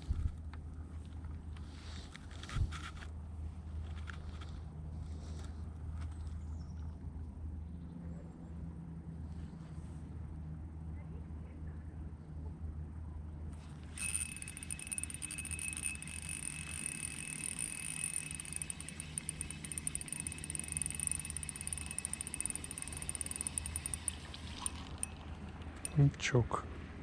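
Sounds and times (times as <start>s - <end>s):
fishing reel whining and ticking: 13.8s - 26.1s.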